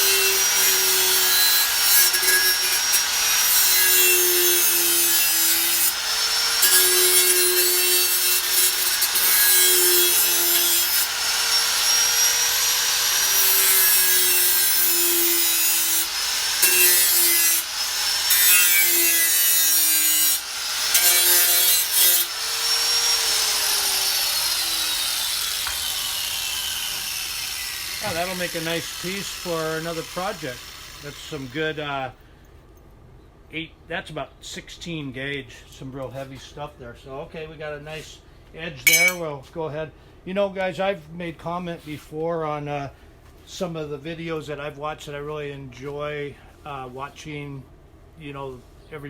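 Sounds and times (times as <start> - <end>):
power tool cutting sheet steel: 0.0 - 31.6, 38.9 - 39.2.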